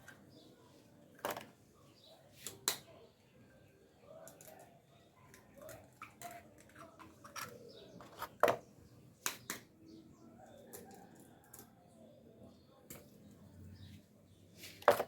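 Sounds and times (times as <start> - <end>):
eggs cracking on a bowl: 4.2 - 9.8.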